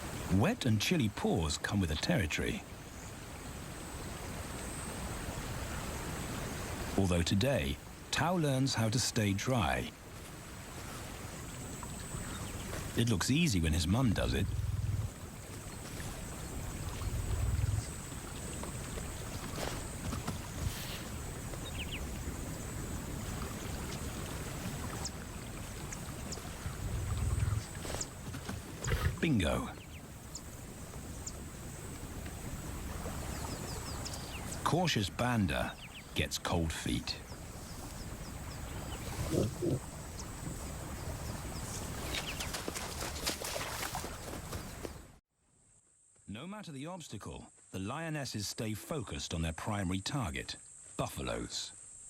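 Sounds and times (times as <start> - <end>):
outdoor ambience: 0.0 - 52.0
water sloshing and lapping: 9.7 - 36.2, 37.2 - 45.2
faint bird chirps: 14.0 - 22.7
young lion calling: 38.7 - 39.9.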